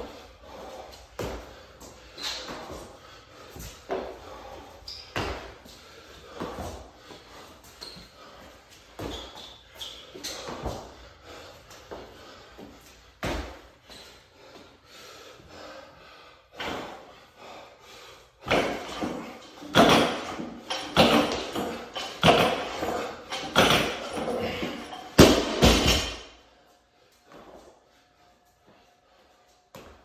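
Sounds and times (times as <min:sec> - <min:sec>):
barbell thuds: 0:18.5 - 0:26.4.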